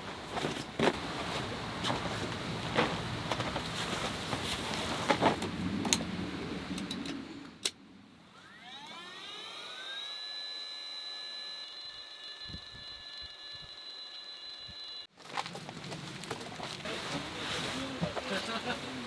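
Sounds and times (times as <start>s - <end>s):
small electric motor whining: 8.3s - 15.1s.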